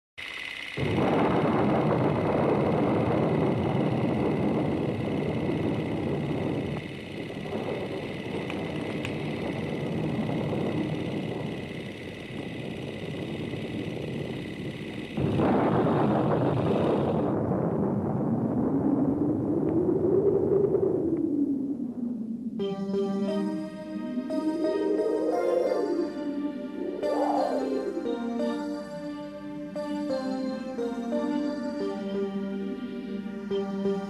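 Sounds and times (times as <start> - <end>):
rushing wind-like noise: 0.4 - 22.6
high ringing tone: 22.6 - 34.0.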